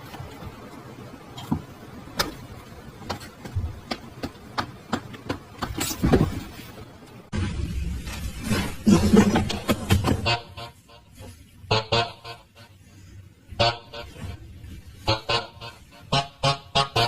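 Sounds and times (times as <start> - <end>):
music: 10.2 - 12.8, 13.5 - 17.0.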